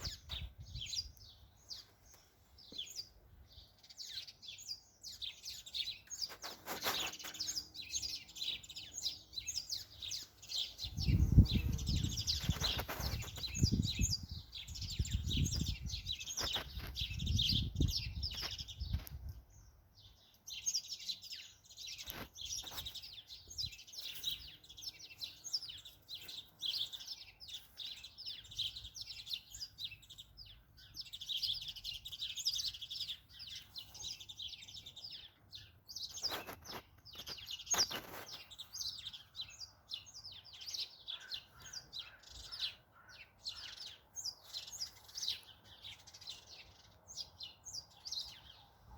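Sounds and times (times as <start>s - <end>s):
wind rumbling on microphone: 0.0s - 1.3s, 10.8s - 19.7s
small birds chirping: 0.0s - 48.9s.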